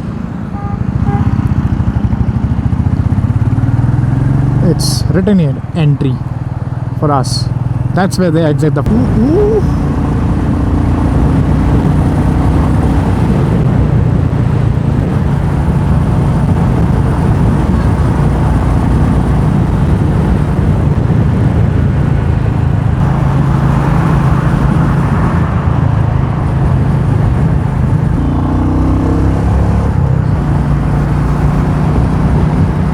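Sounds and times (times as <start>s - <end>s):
wind and road rush: 0.0s - 32.9s
motorcycle engine running: 0.5s - 32.9s.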